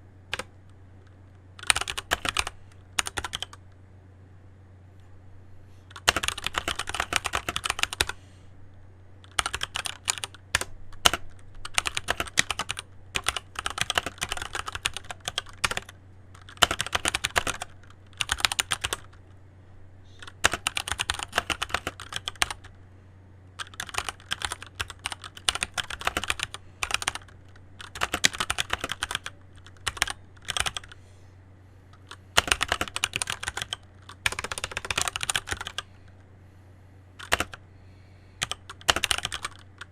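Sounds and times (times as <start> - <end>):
mechanical keyboard typing: 0.3 - 0.6, 1.6 - 3.6, 5.9 - 8.2, 9.2 - 19.2, 20.2 - 22.7, 23.6 - 31.0, 32.0 - 35.8, 37.2 - 37.6, 38.4 - 39.9.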